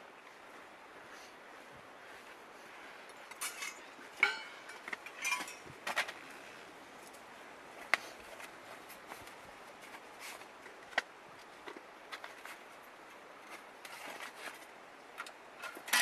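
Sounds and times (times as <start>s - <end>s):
metal gear clinking: 3.4s - 5.7s
ringing metallic clank: 3.5s - 5.6s.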